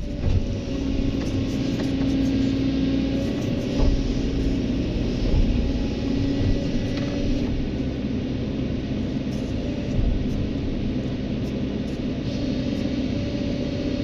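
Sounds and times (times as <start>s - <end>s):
excavator diesel engine droning: 0.0s - 14.0s
low thuds: 3.6s - 8.0s, 9.6s - 11.3s.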